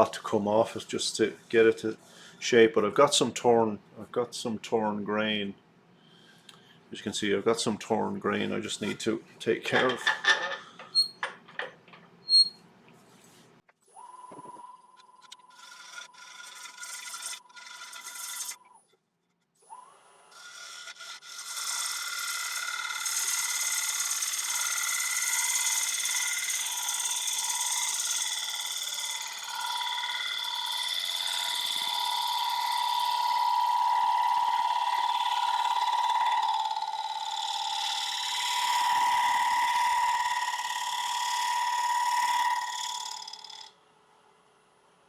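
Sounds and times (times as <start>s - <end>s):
hissing cut on wood lathe: 20.8s - 43.7s.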